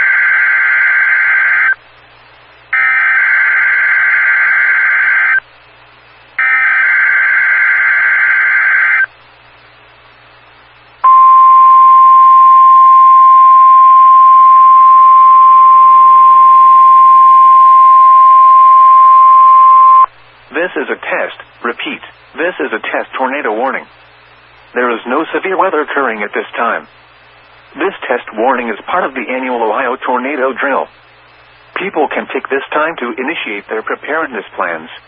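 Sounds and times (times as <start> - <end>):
steady warning alarm tone: 2.8 - 5.4, 6.4 - 9.1.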